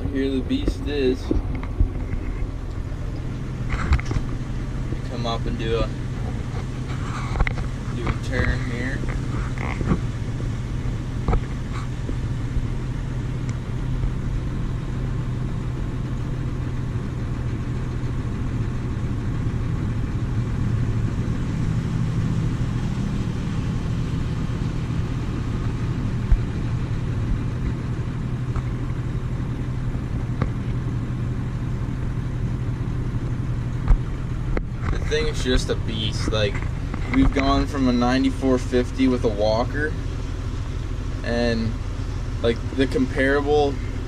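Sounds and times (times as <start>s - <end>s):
diesel machinery engine hum: 0.0s - 44.0s.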